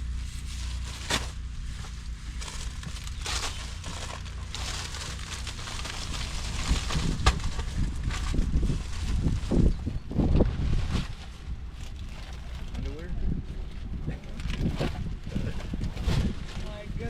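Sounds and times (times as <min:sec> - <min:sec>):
plastic bags crinkling: 0:00.0 - 0:01.4, 0:02.0 - 0:09.7.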